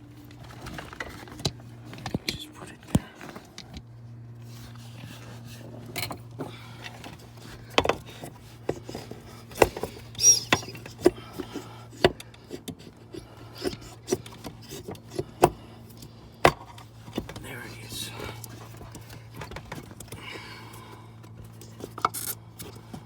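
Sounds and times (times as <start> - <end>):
steady low hum: 0.0 - 23.0
clicks knocks and rubbing: 6.9 - 15.6.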